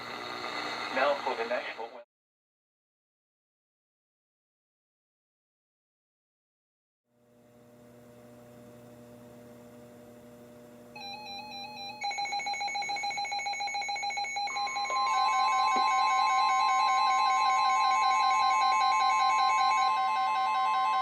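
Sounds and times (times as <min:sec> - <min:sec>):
beeping alarms: 0:11.0 - 0:21.0
steady high tone: 0:11.0 - 0:21.0
warbling electronic alarm: 0:11.0 - 0:21.0.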